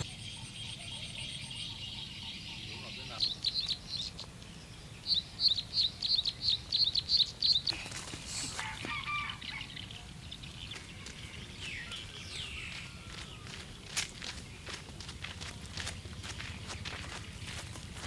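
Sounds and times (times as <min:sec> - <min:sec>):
small bird chirping: 0:00.0 - 0:18.0
rustling: 0:07.7 - 0:08.9.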